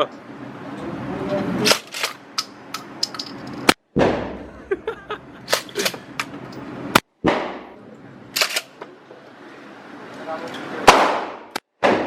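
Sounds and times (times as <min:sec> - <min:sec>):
loud gunshots with echo: 0:10.8 - 0:12.0
distant gunshots: 0:10.9 - 0:12.0.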